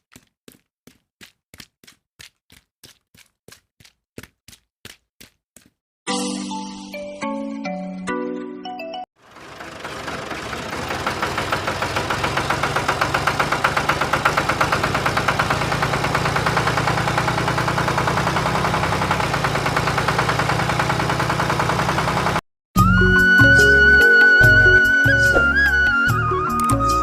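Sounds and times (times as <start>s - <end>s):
small engine running: 9.2s - 22.4s.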